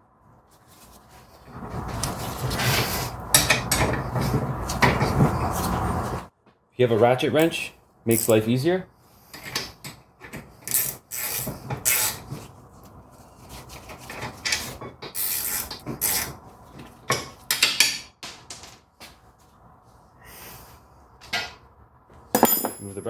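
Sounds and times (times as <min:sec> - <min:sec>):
wrench scraping and clicking: 0:10.6 - 0:12.2, 0:14.5 - 0:16.4.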